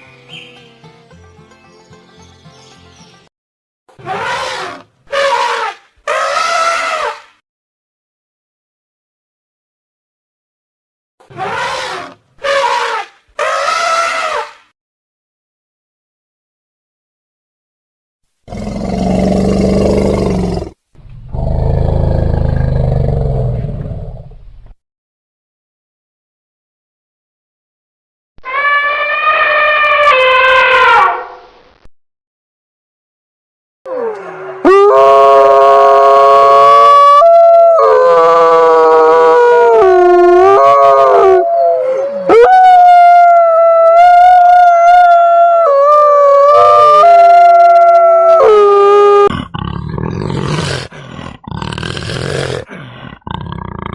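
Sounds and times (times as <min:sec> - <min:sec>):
wolf howling: 0:28.4 - 0:31.2, 0:33.9 - 0:49.3.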